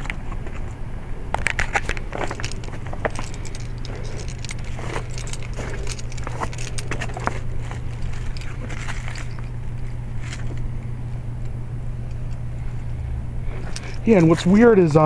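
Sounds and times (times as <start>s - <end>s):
compressor humming: 0.0s - 15.0s
fan whooshing: 0.0s - 15.0s.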